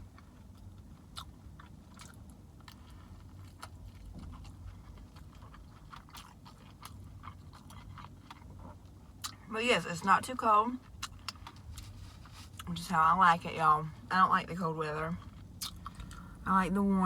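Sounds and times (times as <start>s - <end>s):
wet chewing mouth sounds: 0.0s - 9.5s, 10.8s - 12.8s, 15.0s - 16.4s
low steady hum: 0.0s - 17.0s.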